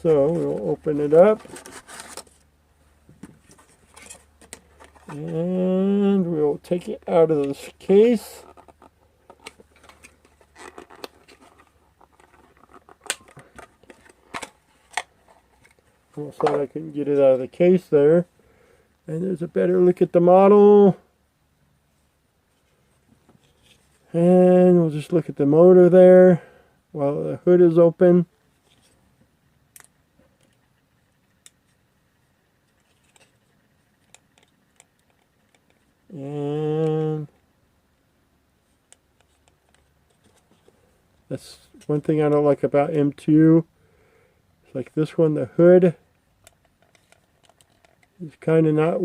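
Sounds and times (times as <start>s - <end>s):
plastic clicking and scraping: 8.4s - 15.8s, 46.4s - 48.2s.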